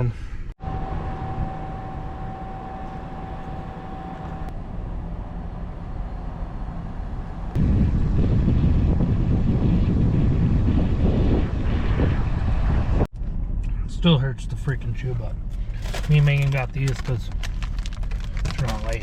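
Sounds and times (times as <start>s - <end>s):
deep rumble: 0.0s - 19.0s
thin steady whine: 0.6s - 13.1s.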